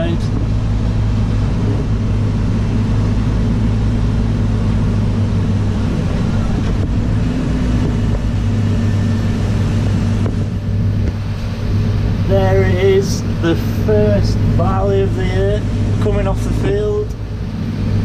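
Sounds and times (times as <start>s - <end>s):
farm machinery droning: 0.0s - 18.0s.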